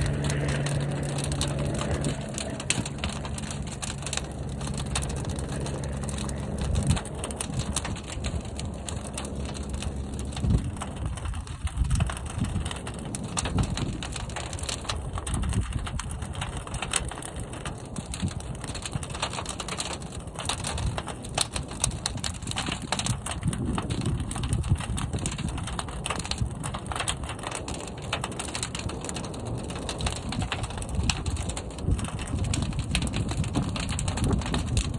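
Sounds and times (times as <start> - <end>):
fire rumbling and crackling: 0.0 - 34.9.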